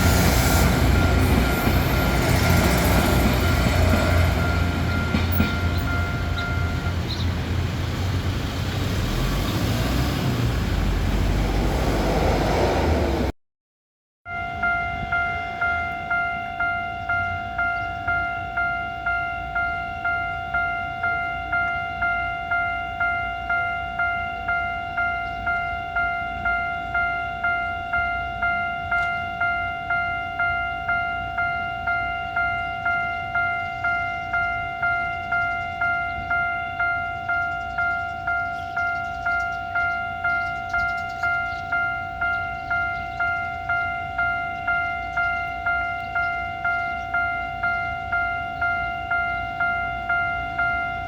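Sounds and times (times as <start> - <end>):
level crossing warning bell: 0.0 - 7.9, 14.2 - 51.0
passing vehicle rumble: 0.0 - 13.3.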